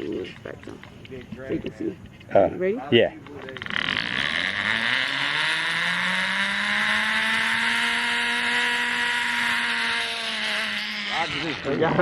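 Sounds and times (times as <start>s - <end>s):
zip-line pulleys whirring on cable: 3.4s - 12.0s.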